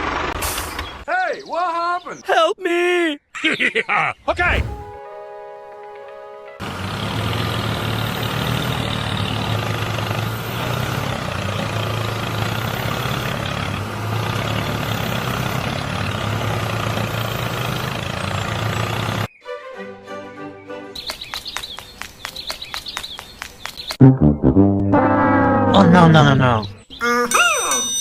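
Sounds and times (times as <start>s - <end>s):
engine humming: 4.3s - 5.0s, 6.6s - 22.0s.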